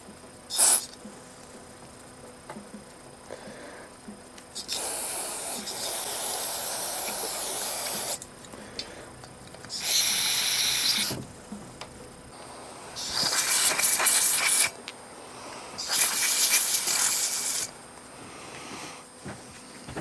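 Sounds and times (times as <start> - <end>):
pressurized spray hissing: 0.5 - 0.9, 4.6 - 8.2, 9.7 - 11.2, 13.0 - 14.8, 15.8 - 17.7.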